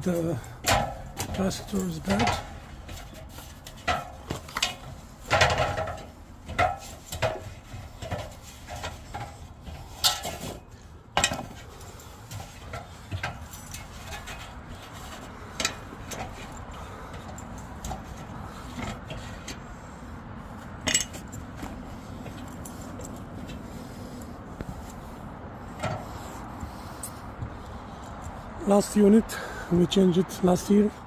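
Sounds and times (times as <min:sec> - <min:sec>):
metallic clinks and rattles: 0:00.0 - 0:19.6, 0:20.8 - 0:24.2.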